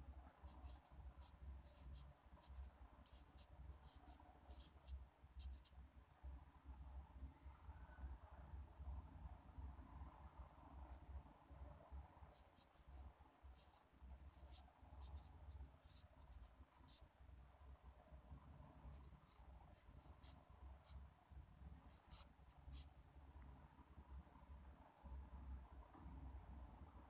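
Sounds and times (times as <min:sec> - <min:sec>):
low steady hum: 0:00.0 - 0:27.0
pen scratching on paper: 0:00.3 - 0:05.7, 0:12.3 - 0:17.0, 0:18.9 - 0:21.0, 0:21.6 - 0:22.9.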